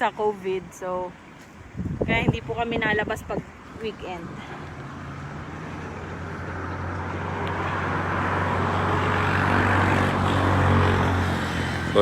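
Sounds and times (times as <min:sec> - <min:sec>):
vehicle passing on road: 0:02.8 - 0:12.0.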